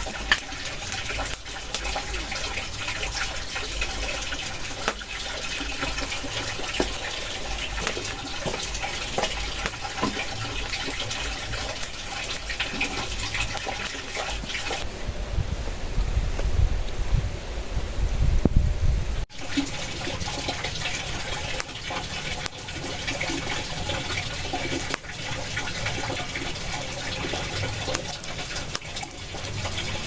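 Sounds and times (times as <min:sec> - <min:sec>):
water rushing: 0:00.0 - 0:14.9, 0:19.3 - 0:30.0
wind rumble on microphone: 0:12.2 - 0:19.3.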